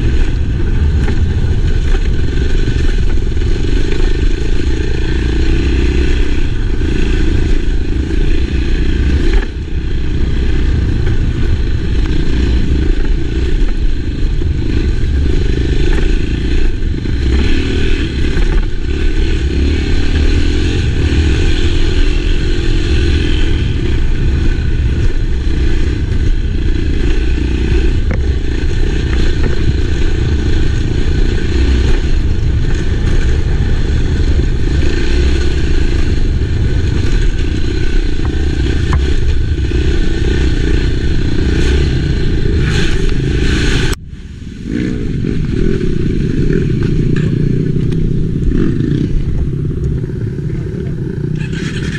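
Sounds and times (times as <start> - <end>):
motorcycle engine running: 0.0 - 51.9.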